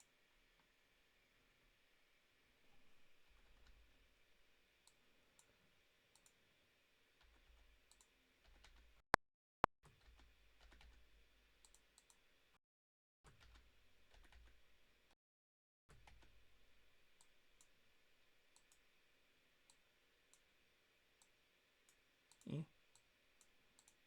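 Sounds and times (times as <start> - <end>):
computer mouse clicks: 6.1 - 6.4, 7.2 - 8.8, 11.6 - 12.2, 18.6 - 18.8, 21.9 - 24.0.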